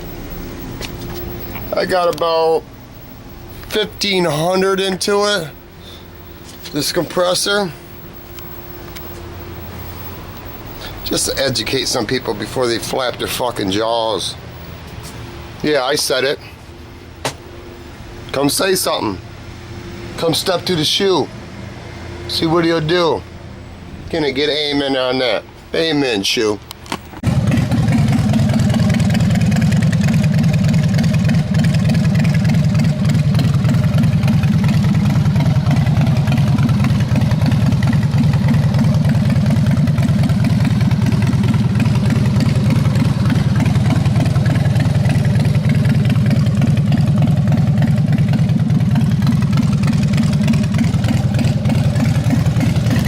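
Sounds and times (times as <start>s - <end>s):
compressor pump chugging: 27.2s - 53.0s.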